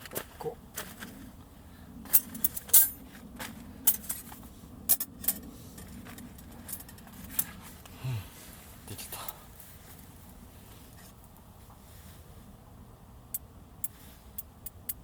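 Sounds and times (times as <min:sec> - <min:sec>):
light clicks and metallic clinks: 0:02.1 - 0:03.0, 0:03.8 - 0:08.0, 0:13.3 - 0:15.0.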